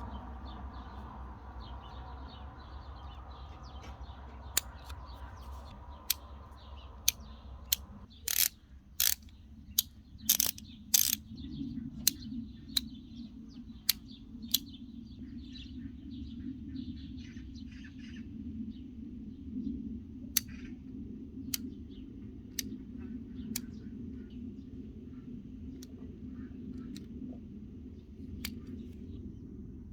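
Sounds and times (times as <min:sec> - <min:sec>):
metal sockets clicking: 0:07.0 - 0:11.3.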